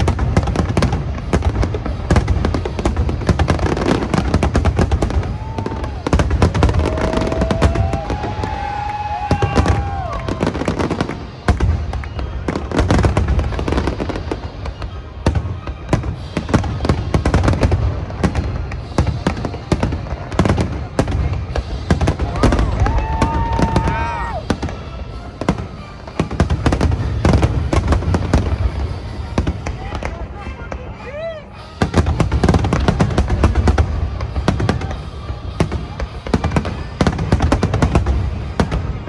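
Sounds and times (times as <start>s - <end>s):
fireworks bursts and crackling: 0.0s - 39.0s
whistling fireworks: 0.0s - 39.0s.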